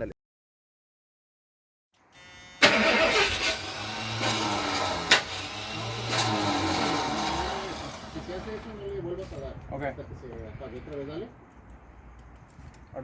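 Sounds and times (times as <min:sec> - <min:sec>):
van engine cranking: 0:02.6 - 0:08.9.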